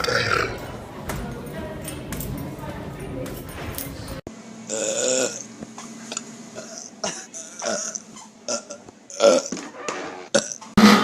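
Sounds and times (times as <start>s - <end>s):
person burping loudly: 0.0s - 0.6s, 4.7s - 5.5s, 6.1s - 9.6s, 10.3s - 11.0s.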